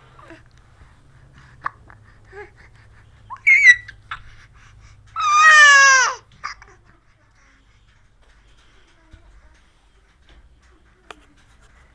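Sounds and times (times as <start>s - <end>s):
baby squealing: 3.3s - 4.1s, 5.2s - 6.2s.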